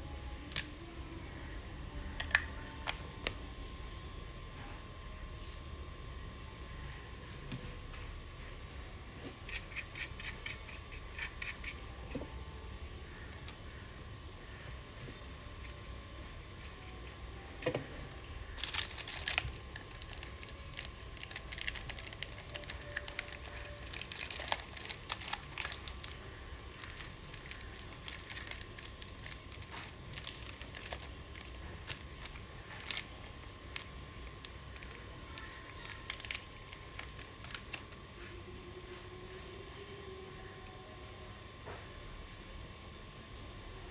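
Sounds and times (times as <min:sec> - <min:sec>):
faint steady hum: 0:00.0 - 0:43.9
crinkling and rustling: 0:16.6 - 0:38.4.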